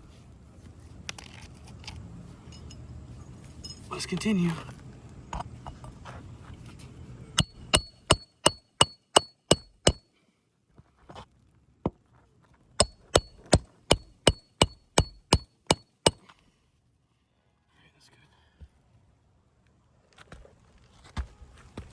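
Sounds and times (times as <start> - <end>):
hatchet hammering nails: 7.4 - 10.0, 12.8 - 16.2.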